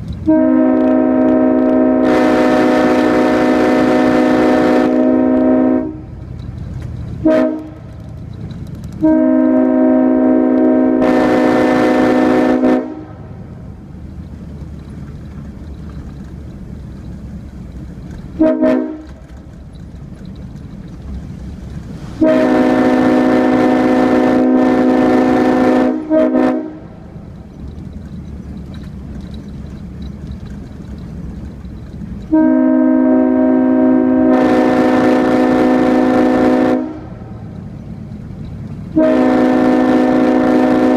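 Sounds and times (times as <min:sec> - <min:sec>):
low steady rumble: 0:00.0 - 0:40.9
locomotive air horn: 0:00.2 - 0:06.2, 0:07.2 - 0:07.8, 0:09.0 - 0:13.3, 0:18.4 - 0:19.2, 0:22.1 - 0:27.0, 0:32.3 - 0:37.2, 0:38.9 - 0:40.9.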